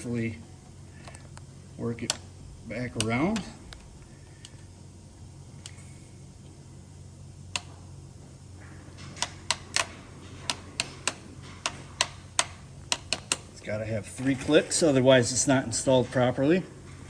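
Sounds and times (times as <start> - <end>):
low steady hum: 0.0 - 17.0
chair mechanism plastic clicks: 1.0 - 1.4, 7.5 - 7.8, 8.9 - 13.6.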